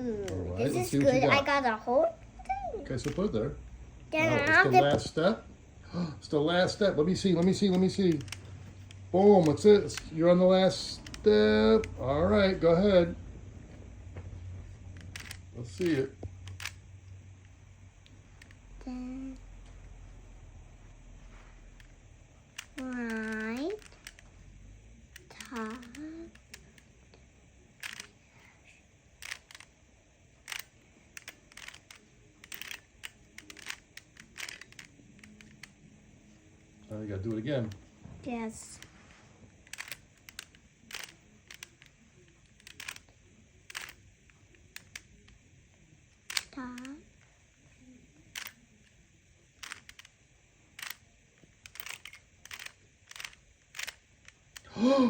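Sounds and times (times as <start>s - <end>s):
puzzle cube clicking: 7.2s - 12.6s, 14.9s - 16.8s, 21.8s - 24.3s, 25.1s - 26.9s, 27.8s - 28.2s, 29.2s - 29.7s, 30.4s - 35.9s, 39.6s - 45.4s, 46.1s - 47.2s, 48.3s - 49.0s, 49.6s - 50.2s, 50.8s - 51.0s, 51.6s - 54.9s.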